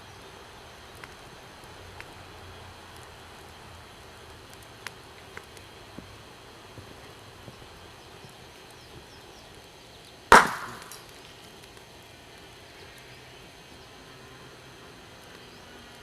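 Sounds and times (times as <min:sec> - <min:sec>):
loud sharp crack: 0:10.3 - 0:11.2
small ticks: 0:10.9 - 0:13.9.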